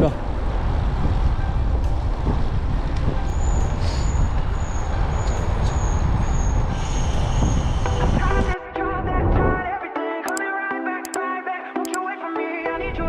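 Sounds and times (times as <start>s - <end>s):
music: 0.0s - 6.8s, 7.5s - 13.0s
wind buffeting microphone: 0.0s - 9.7s.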